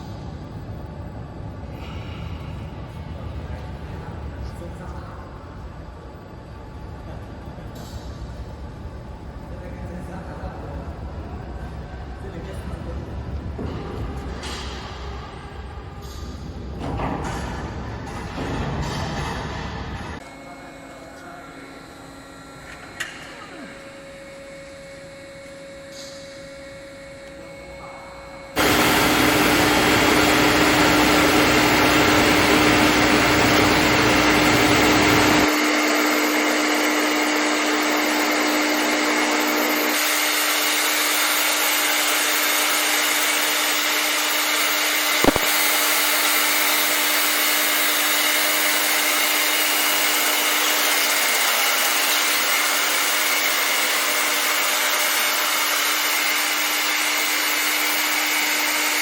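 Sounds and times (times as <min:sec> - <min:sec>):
floor grinder running: 0:28.6 - 0:59.0.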